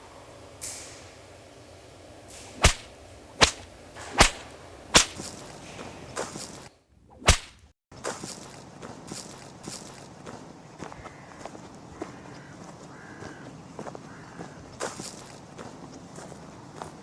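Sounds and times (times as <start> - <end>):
whip cracking: 2.3 - 5.6, 6.2 - 7.7.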